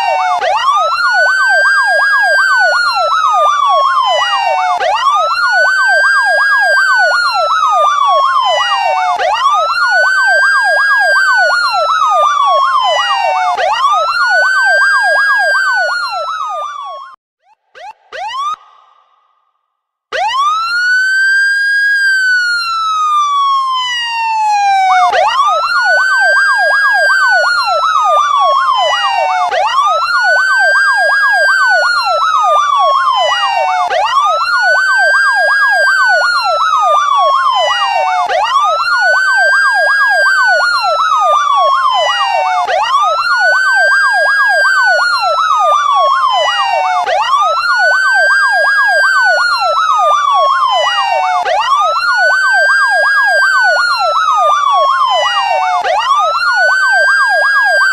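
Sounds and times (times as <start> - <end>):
fast siren yelp: 0.0 - 19.2, 20.1 - 57.9
police siren wailing: 0.0 - 19.2, 20.1 - 57.9.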